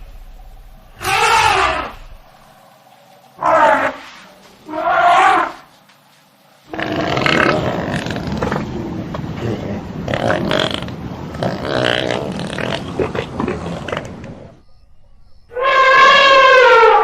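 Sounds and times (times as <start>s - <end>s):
elephants rumbling and growling: 0.0s - 5.6s, 6.7s - 14.6s
elephant calls: 0.9s - 2.5s, 3.3s - 5.7s, 15.5s - 17.0s.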